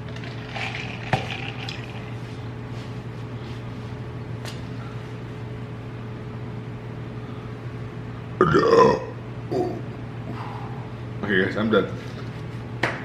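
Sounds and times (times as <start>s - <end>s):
steady low hum: 0.0s - 13.0s
man burping loudly: 8.4s - 9.8s.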